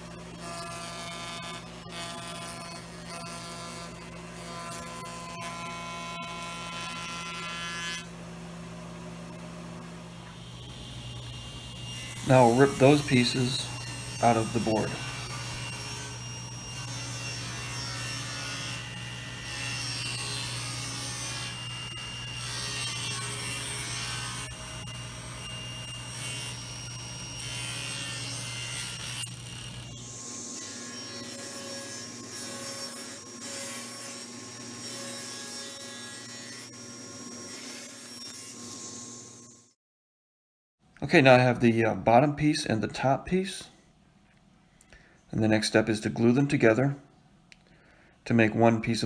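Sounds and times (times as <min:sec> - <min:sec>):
power saw cutting wood: 0:00.0 - 0:08.2, 0:09.3 - 0:39.7
steady machine tone: 0:08.8 - 0:17.2.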